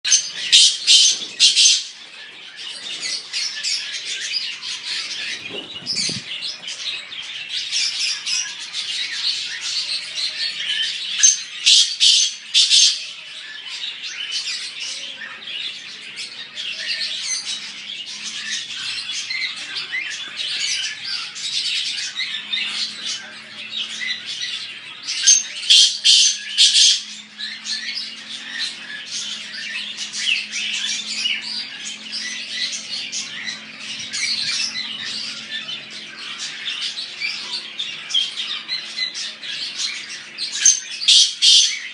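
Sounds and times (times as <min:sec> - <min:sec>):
birds chattering and squawking: 0:00.0 - 0:41.9.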